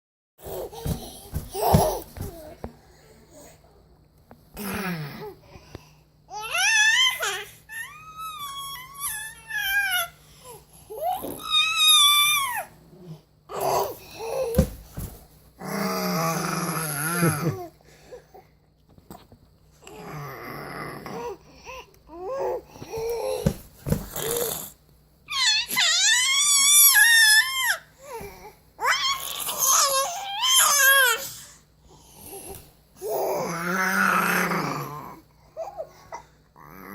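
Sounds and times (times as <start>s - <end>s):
baby wailing: 6.3s - 10.1s, 11.0s - 12.7s, 25.3s - 27.8s, 28.8s - 31.3s, 33.0s - 35.2s.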